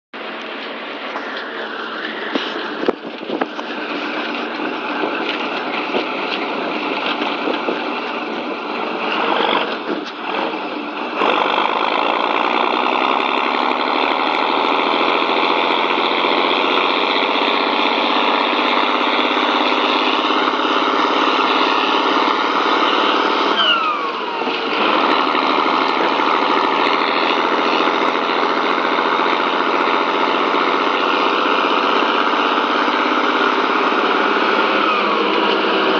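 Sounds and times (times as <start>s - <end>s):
engine revving: 0.2s - 35.9s
turbo whistling: 21.0s - 24.3s.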